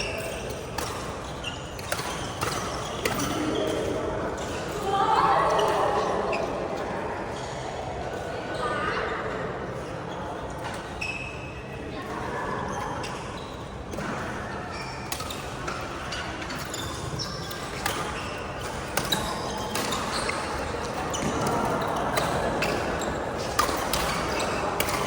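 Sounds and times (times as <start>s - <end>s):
steady background noise: 0.0s - 25.0s
rackets striking shuttlecock: 0.2s - 4.0s, 15.1s - 25.0s.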